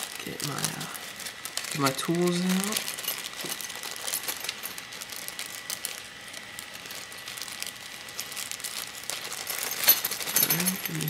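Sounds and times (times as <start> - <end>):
tools clicking and rustling: 2.6 - 5.9, 8.7 - 11.0.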